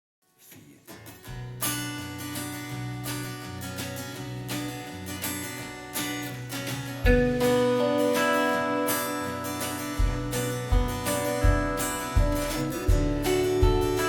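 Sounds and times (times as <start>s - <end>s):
acoustic guitar strumming: 0.5s - 14.0s
low bass notes: 9.9s - 14.0s.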